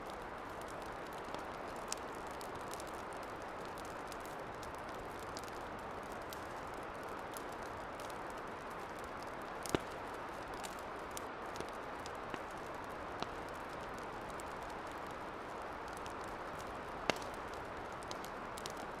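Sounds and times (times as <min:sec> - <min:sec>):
campfire crackles: 0:00.0 - 0:19.0
campfire hissing: 0:00.0 - 0:19.0
campfire pop: 0:09.2 - 0:12.5, 0:15.9 - 0:18.9.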